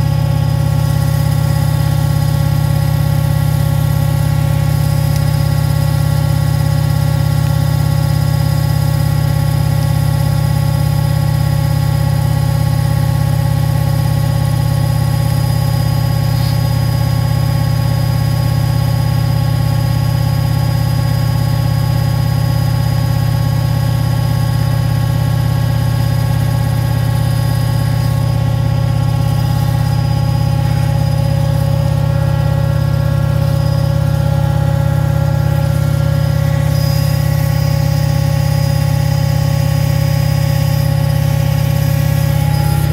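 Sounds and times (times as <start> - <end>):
washing machine motor hum: 0.0 - 42.9
whining tones: 27.0 - 42.9.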